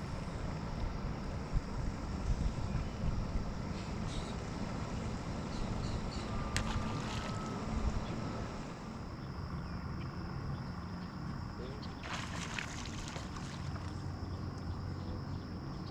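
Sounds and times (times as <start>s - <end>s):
wind buffeting microphone: 0.0s - 8.8s.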